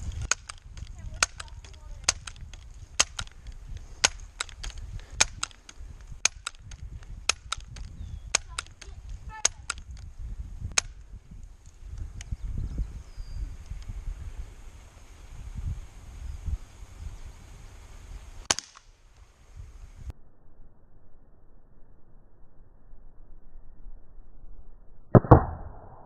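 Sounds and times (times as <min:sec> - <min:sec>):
faint clicks: 0:00.0 - 0:10.1, 0:13.6 - 0:14.0
bb gun shots cracking: 0:00.2 - 0:03.4, 0:04.0 - 0:10.0, 0:18.4 - 0:18.9.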